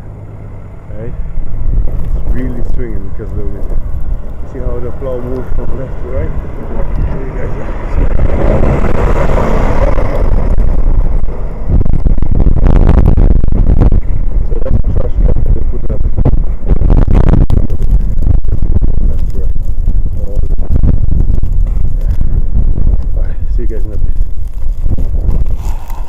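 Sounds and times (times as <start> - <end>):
wind buffeting microphone: 0.0 - 26.0
truck engine driving past: 3.1 - 12.2.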